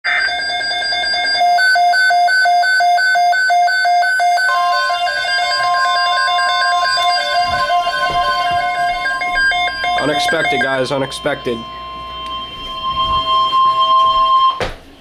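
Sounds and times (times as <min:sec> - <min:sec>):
steady alert tone: 0:04.0 - 0:14.6
music with alternating two-note figure: 0:04.5 - 0:14.5.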